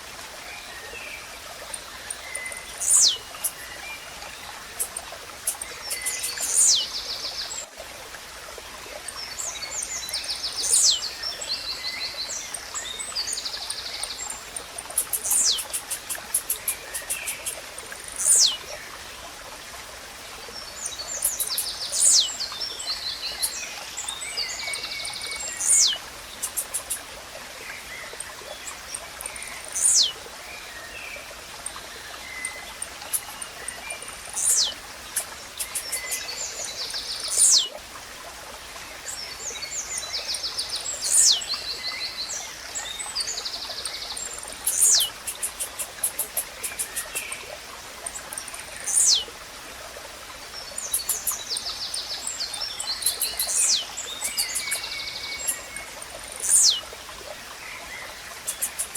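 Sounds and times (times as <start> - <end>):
running water: 0.0 - 58.9
other birds chirping: 2.0 - 3.8, 4.6 - 7.0, 13.7 - 18.6, 20.8 - 22.4, 23.1 - 27.1, 29.2 - 30.2, 32.4 - 37.7, 44.2 - 47.4, 48.2 - 49.3, 50.7 - 56.8, 58.4 - 58.9.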